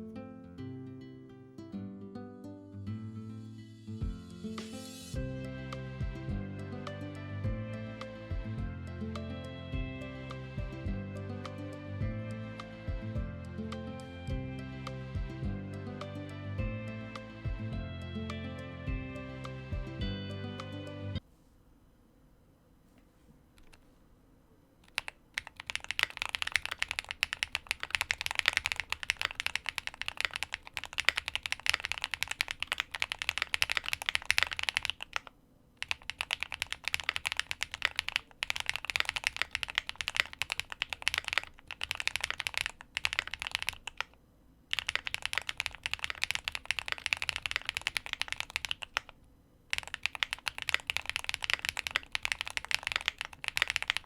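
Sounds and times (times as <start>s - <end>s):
mechanical keyboard typing: 23.6s - 23.8s, 24.8s - 54.0s.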